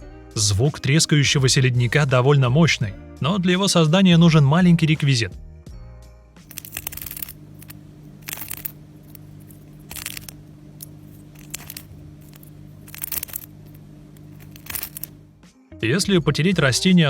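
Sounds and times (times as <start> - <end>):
crackling crunching bursts: 6.5 - 15.4
low hum: 6.5 - 15.4.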